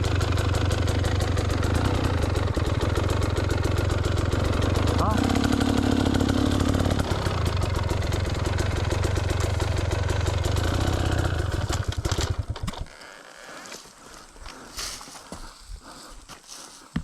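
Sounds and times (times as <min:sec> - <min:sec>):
dirt bike engine running hard: 0:00.0 - 0:13.2.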